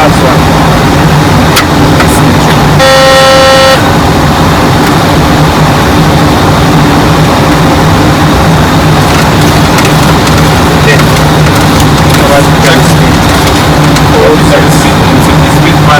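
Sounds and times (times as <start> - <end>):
steady electronic tone: 0.0 - 9.8
cockpit noise: 0.0 - 15.9.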